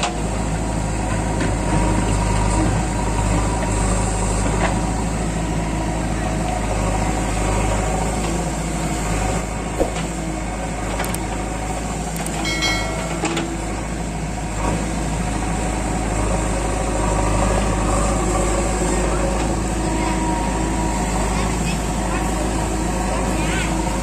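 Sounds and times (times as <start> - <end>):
diesel engine running: 0.0 - 24.0
brief high tone: 12.4 - 13.8.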